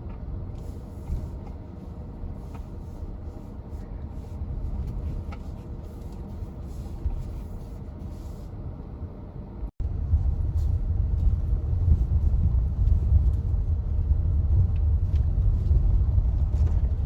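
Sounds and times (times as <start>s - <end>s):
vehicle driving over rough ground: 9.8s - 17.0s.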